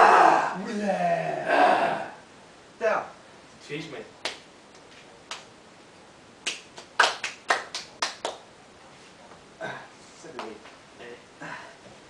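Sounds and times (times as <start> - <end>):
sharp hand claps: 4.2 - 4.5, 5.2 - 5.5, 6.4 - 8.5, 10.4 - 10.6.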